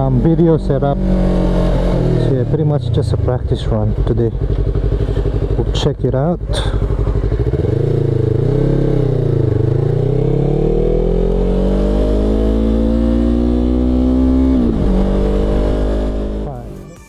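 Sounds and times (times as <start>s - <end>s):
motorcycle engine revving: 0.0s - 16.9s.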